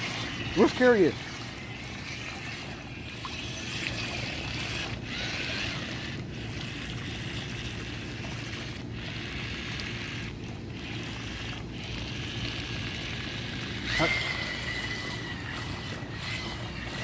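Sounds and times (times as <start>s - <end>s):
electric motor whine: 0.0s - 17.0s
water churning: 0.0s - 17.0s.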